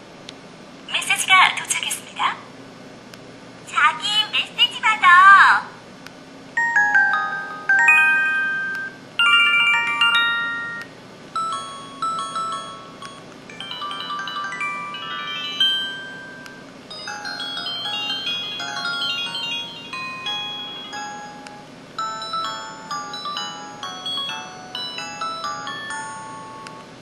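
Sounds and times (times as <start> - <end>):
phone chime melodies: 6.6 - 26.9.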